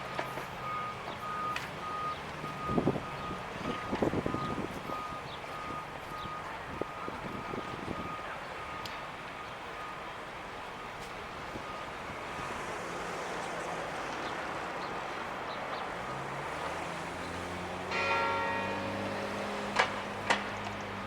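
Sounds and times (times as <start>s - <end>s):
tower clock bells chiming: 17.9s - 20.2s.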